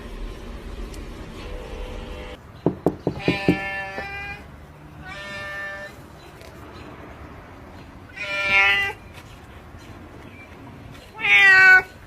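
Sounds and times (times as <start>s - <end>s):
cat meowing: 3.2s - 6.0s, 8.1s - 9.0s, 11.1s - 12.0s.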